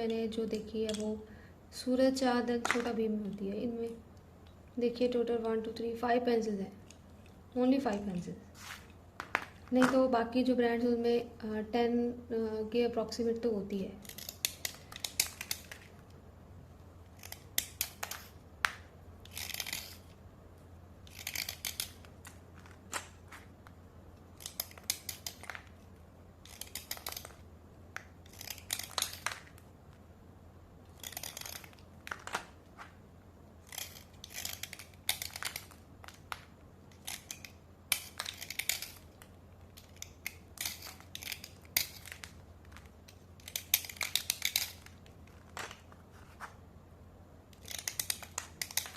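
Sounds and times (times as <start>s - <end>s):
slate pencils scraping: 7.7s - 9.0s, 19.2s - 20.2s, 21.0s - 23.6s, 24.3s - 27.4s, 28.2s - 29.6s, 30.9s - 33.0s, 33.6s - 36.2s, 36.9s - 46.6s, 47.5s - 48.9s.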